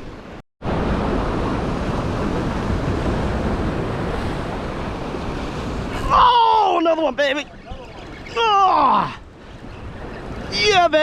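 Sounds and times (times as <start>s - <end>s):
surf: 0.0s - 11.0s
wind on microphone: 7.3s - 11.0s.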